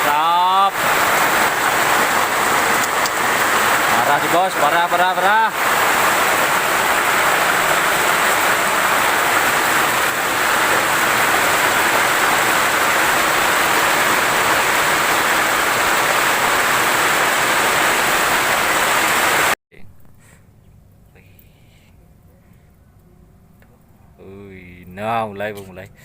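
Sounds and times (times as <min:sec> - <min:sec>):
heavy rain hissing: 0:00.0 - 0:19.6.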